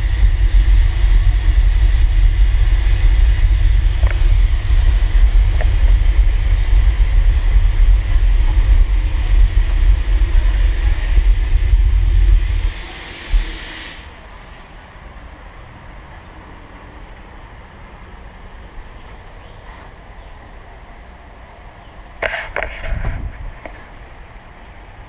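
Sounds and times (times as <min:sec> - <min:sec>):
wind buffeting microphone: 0:00.0 - 0:14.2, 0:22.2 - 0:24.4
low rumble: 0:00.0 - 0:14.6
steady rushing hiss: 0:00.0 - 0:19.2, 0:19.8 - 0:25.0.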